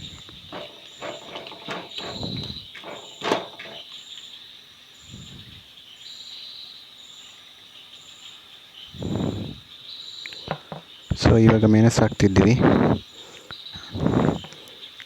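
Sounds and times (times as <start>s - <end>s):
insects chirping: 0.0s - 15.0s
soft scrapes: 0.5s - 3.8s.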